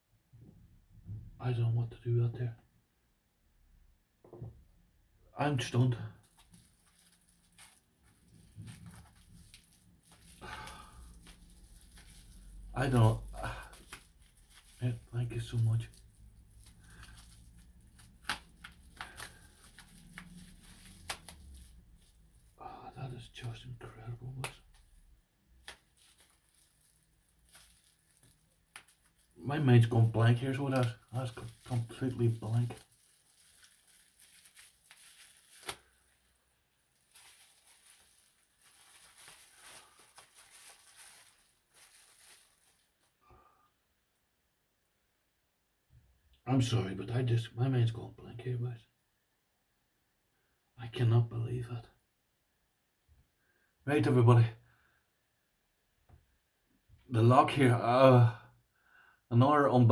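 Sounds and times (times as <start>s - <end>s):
low steady room hum: 0.0s - 58.7s
faint rustling and handling: 5.4s - 43.2s.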